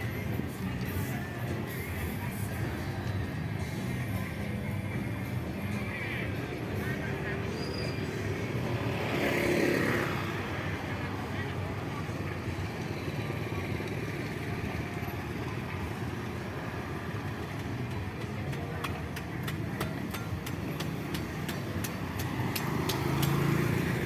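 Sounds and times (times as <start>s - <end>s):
traffic noise: 0.0s - 24.0s
vehicle passing close: 7.9s - 11.1s, 21.8s - 24.0s
sharp irregular clicks: 17.5s - 23.6s.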